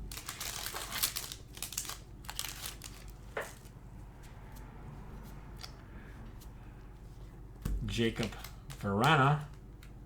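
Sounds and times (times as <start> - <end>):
foil wrapper crinkling: 0.0 - 3.8
cards being handled: 7.7 - 10.0.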